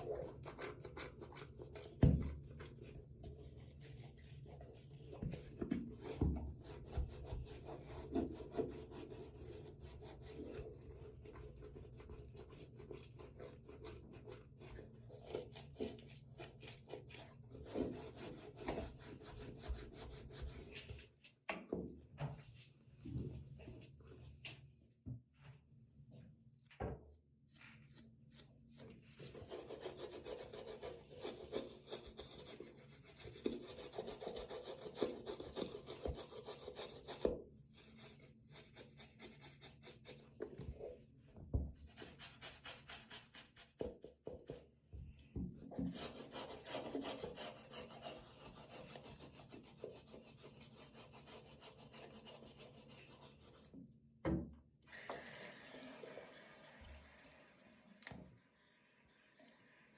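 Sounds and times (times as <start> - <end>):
brush scrubbing a sneaker: 0.0 - 21.0, 27.6 - 40.8, 41.7 - 44.7, 45.8 - 53.8.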